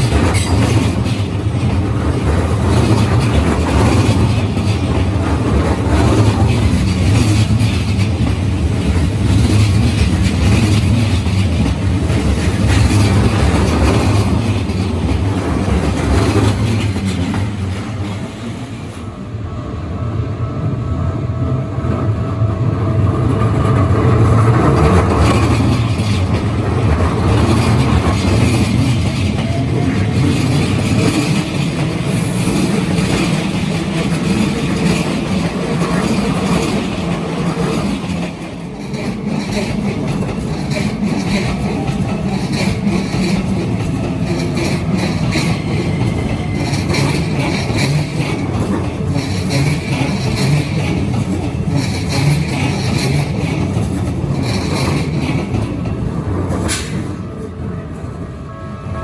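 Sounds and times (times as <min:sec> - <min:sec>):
train wheels rumbling on rail: 0:00.0 - 0:59.0
crossing warning bell clanging: 0:23.7 - 0:59.0.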